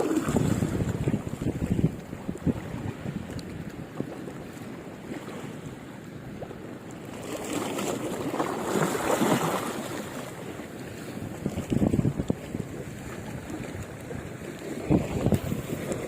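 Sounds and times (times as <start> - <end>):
wind buffeting microphone: 0.0 - 4.4, 11.0 - 16.0.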